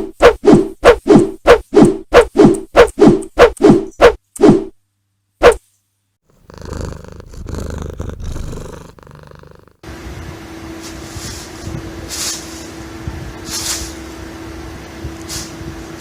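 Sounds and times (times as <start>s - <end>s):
cat purring: 6.3s - 9.8s.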